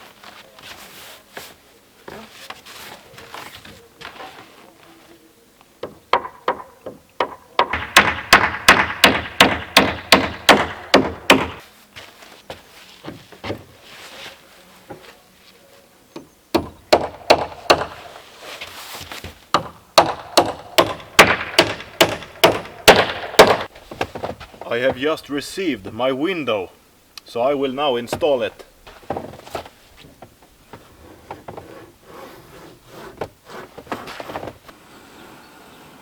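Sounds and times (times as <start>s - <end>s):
hammer driving nails into wood: 5.8s - 11.6s, 16.2s - 18.1s, 19.5s - 23.7s.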